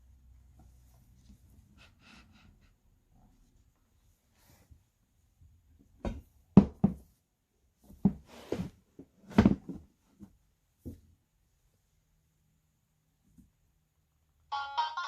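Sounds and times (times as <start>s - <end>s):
book knocks and thumps: 7.9s - 9.9s.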